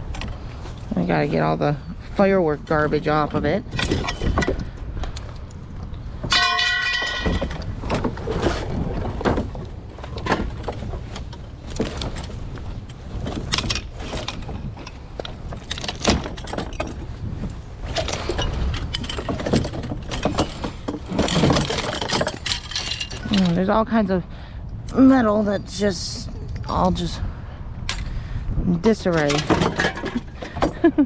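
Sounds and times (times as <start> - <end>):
scrap metal clanking and scraping: 0.0 - 5.4, 6.1 - 23.7, 28.9 - 31.0
metallic ring: 6.3 - 7.5.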